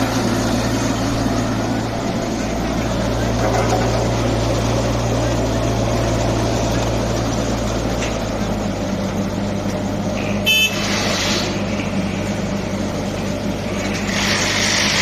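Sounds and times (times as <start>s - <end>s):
diesel engine running: 0.0s - 15.0s
hiss: 10.7s - 11.8s, 13.9s - 15.0s.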